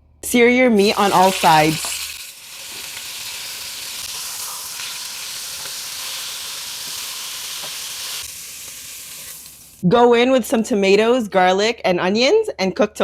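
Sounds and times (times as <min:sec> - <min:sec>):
meat sizzling in hot oil: 0:00.8 - 0:09.8.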